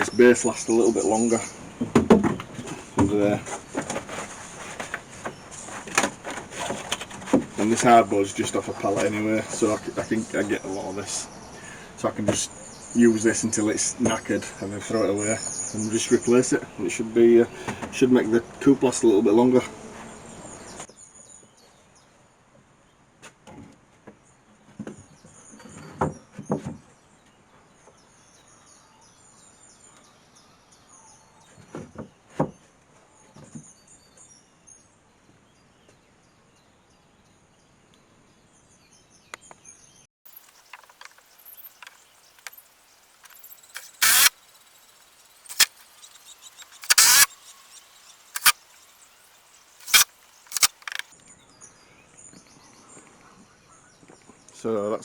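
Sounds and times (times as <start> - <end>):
birds chirping: 0.0 - 21.2, 39.4 - 55.0.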